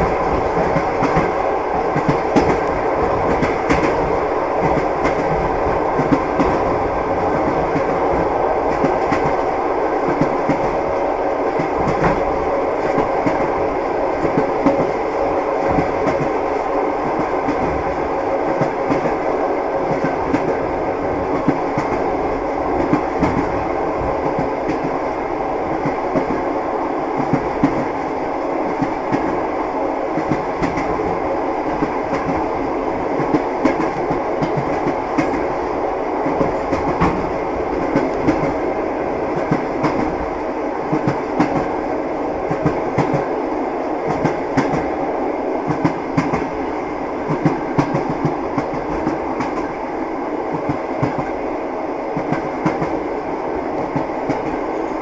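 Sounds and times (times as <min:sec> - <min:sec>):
train wheels clattering over rails: 0:00.0 - 0:19.2, 0:19.8 - 0:25.1, 0:30.1 - 0:41.8, 0:45.6 - 0:49.8.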